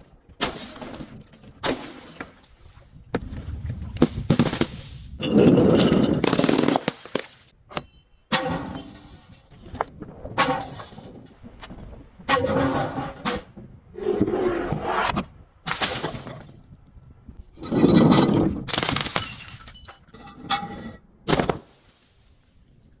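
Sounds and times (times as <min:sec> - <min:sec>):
glass bottles shattering: 0:05.2 - 0:09.6, 0:10.4 - 0:11.3, 0:15.7 - 0:16.6, 0:18.7 - 0:20.2.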